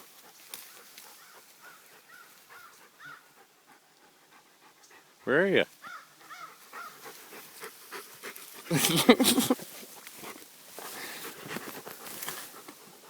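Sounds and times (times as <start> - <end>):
rustling through ferns: 0.0 - 3.2, 5.7 - 13.0
dog panting: 0.0 - 13.0.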